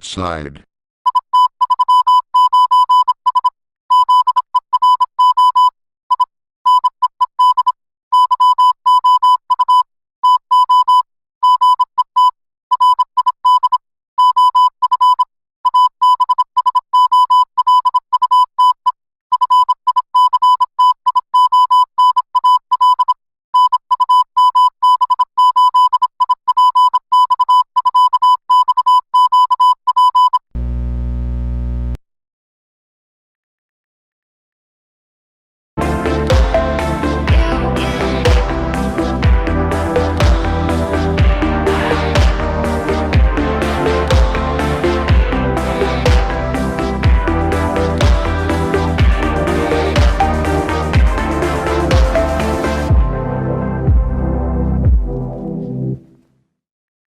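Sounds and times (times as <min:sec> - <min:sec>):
morse code beeps: 0:01.1 - 0:30.4.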